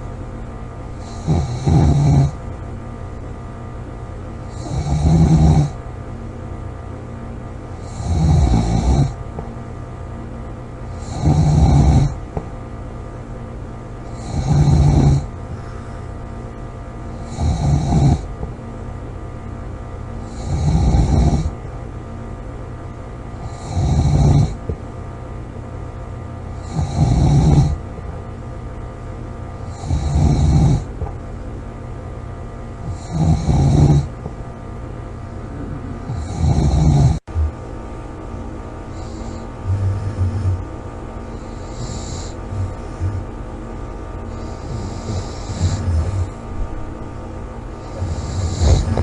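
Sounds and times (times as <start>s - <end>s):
woman snoring loudly: 1.0s - 2.4s, 4.5s - 5.8s, 7.8s - 9.2s, 11.0s - 12.2s, 14.2s - 15.3s, 17.2s - 18.3s, 20.3s - 21.5s, 23.4s - 24.6s, 26.6s - 27.8s, 29.7s - 30.9s, 32.9s - 34.1s, 35.5s - 37.2s, 39.0s - 40.6s, 41.4s - 43.3s, 44.3s - 46.4s, 47.8s - 49.0s.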